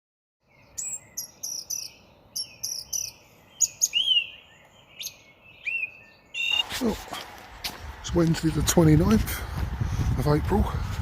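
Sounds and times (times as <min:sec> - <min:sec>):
songbird chirping: 0:00.4 - 0:08.0
bird whistled slurs: 0:00.8 - 0:06.7.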